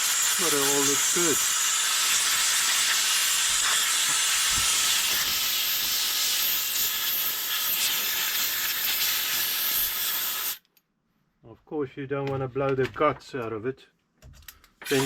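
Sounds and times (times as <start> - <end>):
compressed air hissing: 0.0 - 10.6.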